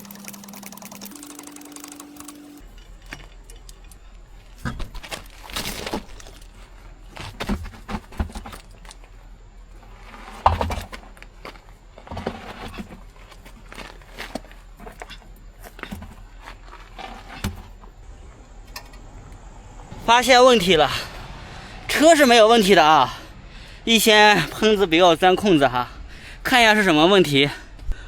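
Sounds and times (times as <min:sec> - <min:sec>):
tools and metal parts clanking: 0:02.0 - 0:09.2, 0:09.8 - 0:19.4.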